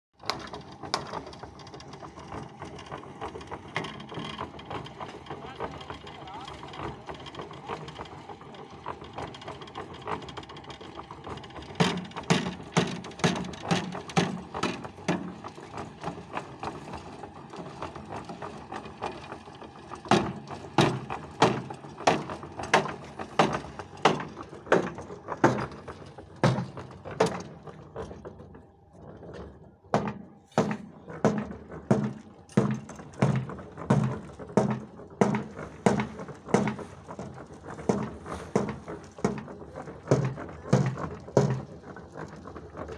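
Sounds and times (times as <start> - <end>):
rhythmic sharp knocks: 30.0 - 36.9.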